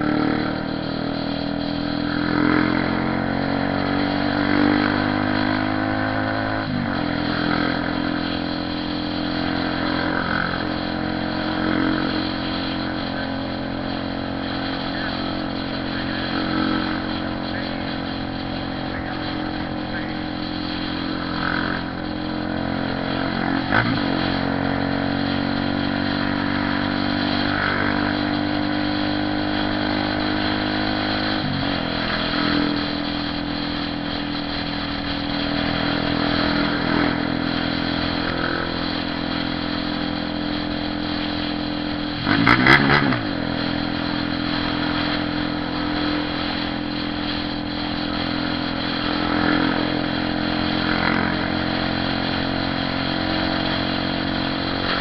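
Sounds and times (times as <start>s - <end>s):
motorcycle engine revving: 0.0s - 55.0s
motorcycle engine running: 0.0s - 55.0s.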